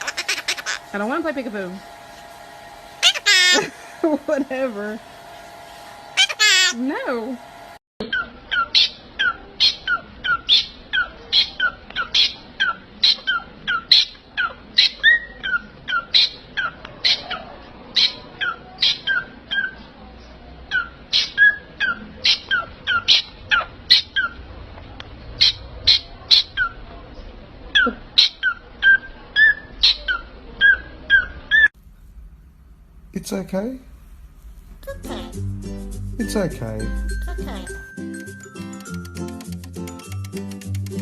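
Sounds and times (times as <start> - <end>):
parrot calling: 0.0 - 1.1, 3.0 - 4.0, 6.2 - 6.8, 8.0 - 19.8, 20.7 - 24.5, 25.4 - 26.8, 27.7 - 31.7.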